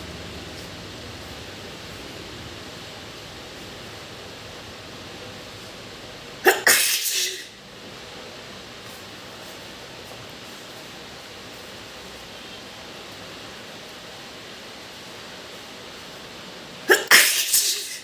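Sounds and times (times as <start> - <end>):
steady hiss: 0.0 - 18.0
wet sneeze: 6.4 - 7.5, 16.9 - 18.0.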